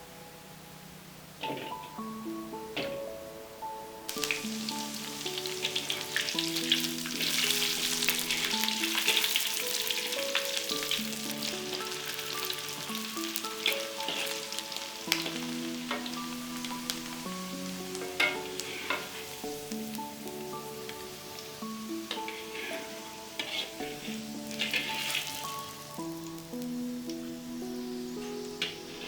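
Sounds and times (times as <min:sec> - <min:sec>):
melodic background music: 0:00.0 - 0:29.0
food frying in hot oil: 0:04.1 - 0:27.3.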